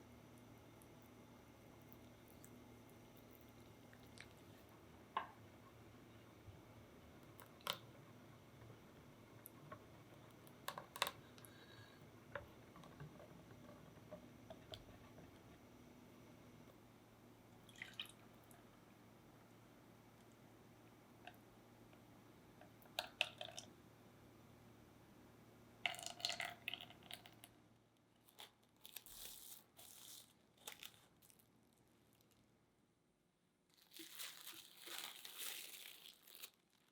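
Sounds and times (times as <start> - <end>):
crinkling handling sounds: 28.1 - 32.5, 33.7 - 36.9.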